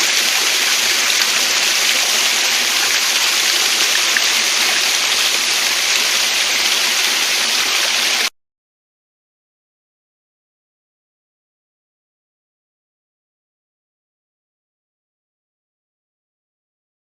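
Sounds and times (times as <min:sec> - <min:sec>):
waterfall and stream rushing: 0:00.0 - 0:08.3.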